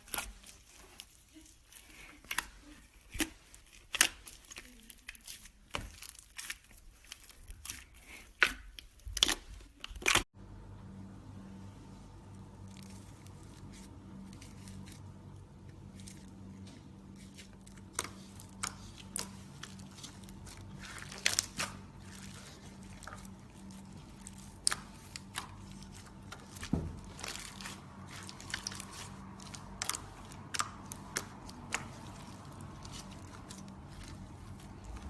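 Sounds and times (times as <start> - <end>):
foam slime crackling and popping: 0.0 - 10.2, 17.1 - 35.0
low hum: 10.4 - 35.0.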